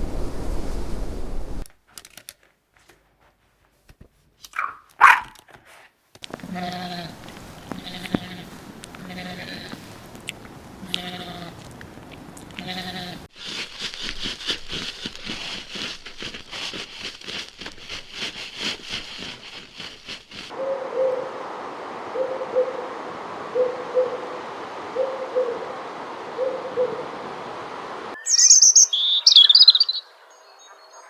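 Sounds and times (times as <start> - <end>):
farm animal bleating: 6.3 - 13.3
bird hooting low notes: 20.5 - 21.4, 22.1 - 24.3.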